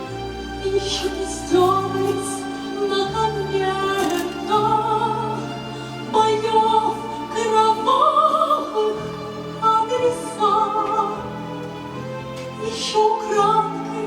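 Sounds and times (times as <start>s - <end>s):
orchestral accompaniment: 0.0s - 14.0s
woman singing slow song: 12.6s - 14.0s.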